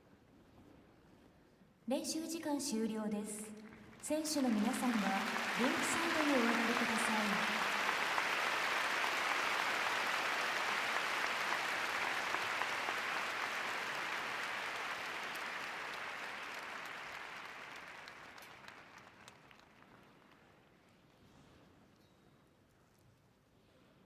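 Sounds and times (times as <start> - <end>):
large audience applauding: 3.7 - 20.6.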